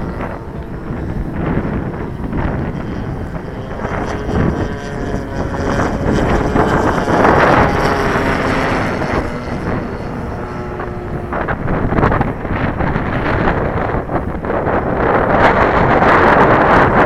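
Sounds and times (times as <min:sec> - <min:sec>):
model airplane engine drone: 0:00.0 - 0:17.0
wind buffeting microphone: 0:00.0 - 0:17.0.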